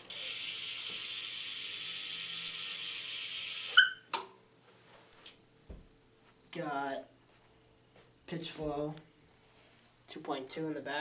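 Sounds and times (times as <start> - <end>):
bicycle hub buzzing: 0.0 - 4.0
squeak and click: 3.7 - 4.0.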